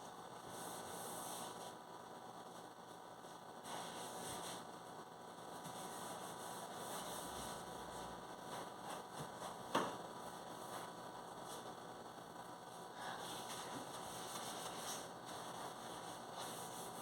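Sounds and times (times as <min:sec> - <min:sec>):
faint hiss and hum: 0:00.0 - 0:17.0.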